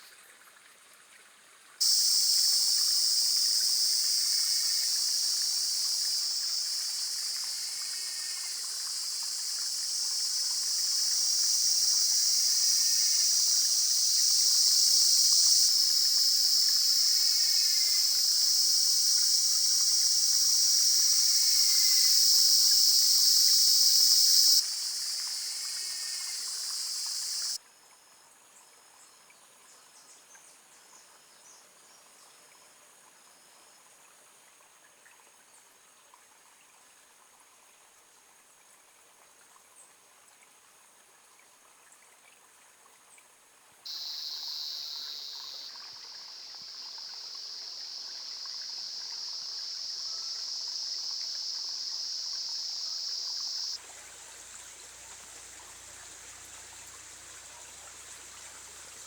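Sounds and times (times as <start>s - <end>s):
insects droning: 1.8s - 27.6s, 43.9s - 59.0s.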